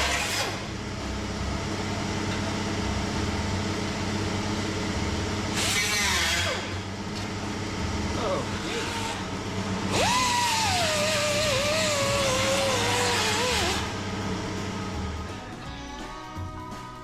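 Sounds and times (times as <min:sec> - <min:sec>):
power tool running: 0:00.0 - 0:01.2, 0:05.4 - 0:07.5, 0:08.1 - 0:15.0.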